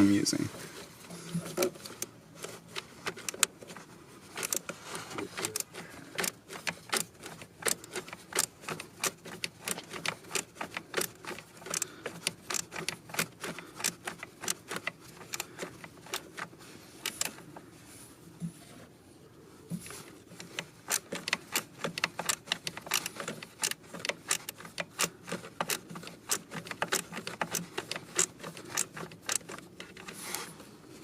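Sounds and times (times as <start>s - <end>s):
hand ratchet clicking: 4.4s - 4.8s, 5.4s - 17.4s, 20.4s - 30.2s.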